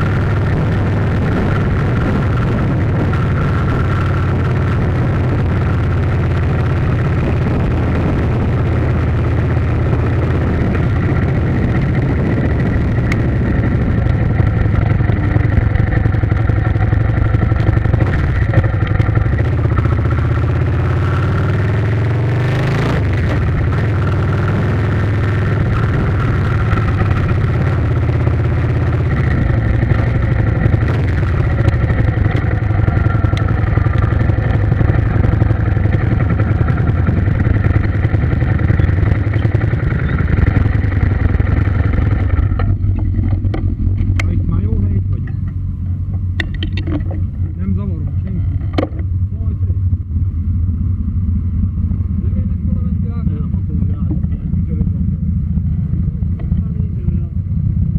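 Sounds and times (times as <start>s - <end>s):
vehicle engine running: 0.0s - 57.9s.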